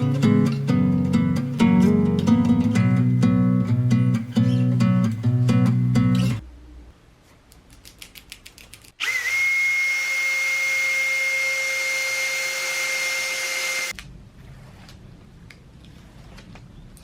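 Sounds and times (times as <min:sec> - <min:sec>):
trimmer router whining: 0:09.0 - 0:13.9.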